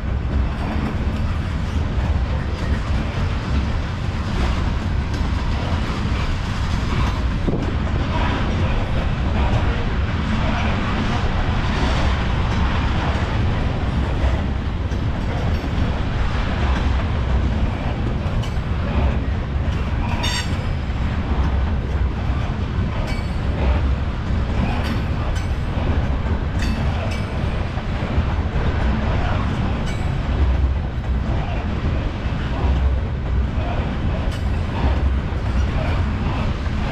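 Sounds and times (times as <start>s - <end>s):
freight train rumbling past: 0.0s - 36.9s
high wheel squeal: 20.1s - 20.8s.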